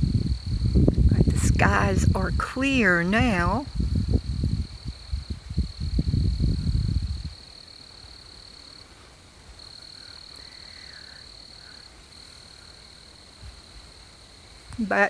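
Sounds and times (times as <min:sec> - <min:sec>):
wind gusting on microphone: 0:00.0 - 0:07.5
crickets trilling: 0:00.0 - 0:15.0.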